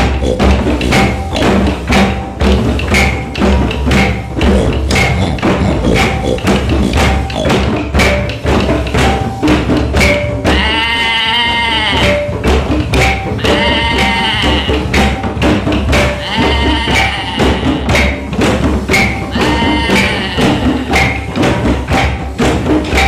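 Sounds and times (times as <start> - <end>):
knocking percussion beat: 0.0 - 23.0
drawn-out bleat-like call: 4.5 - 7.5, 10.5 - 12.3, 13.4 - 14.9, 16.1 - 18.1, 19.3 - 21.2.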